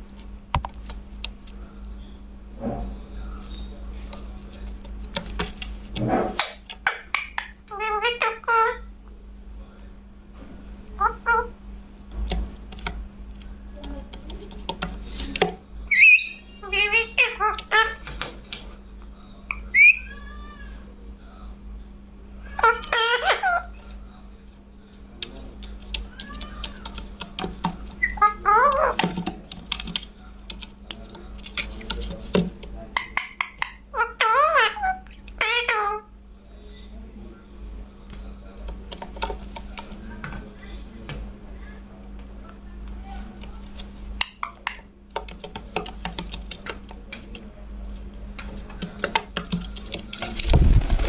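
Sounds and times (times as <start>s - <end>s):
steady low hum: 0.0s - 51.0s
parakeet calling: 6.9s - 8.9s, 15.9s - 18.0s, 19.6s - 20.5s, 22.5s - 23.8s, 28.0s - 29.0s, 33.0s - 36.1s
parakeet warbling: 6.9s - 8.9s, 11.0s - 11.6s, 15.9s - 18.0s, 19.7s - 20.7s, 22.5s - 23.8s, 28.0s - 29.0s, 33.0s - 36.1s
sharp clicks and taps: 45.1s - 47.4s.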